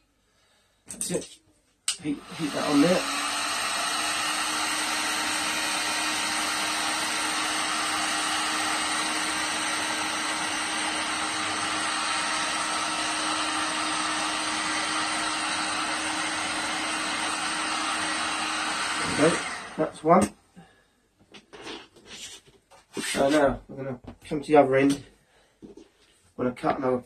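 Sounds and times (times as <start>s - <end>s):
heat gun blowing whir: 1.9s - 20.0s.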